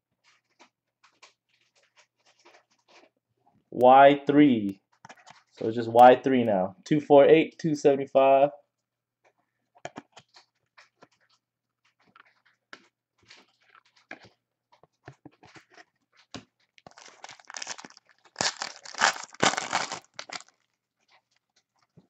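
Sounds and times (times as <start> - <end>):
trading cards clicking and rustling: 12.0 - 20.6
wrapper tearing and crinkling: 16.8 - 20.8.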